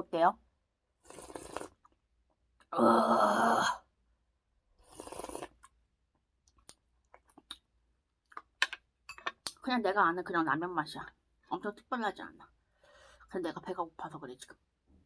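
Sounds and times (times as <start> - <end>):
person slurping broth: 1.0 - 1.8, 4.8 - 5.7.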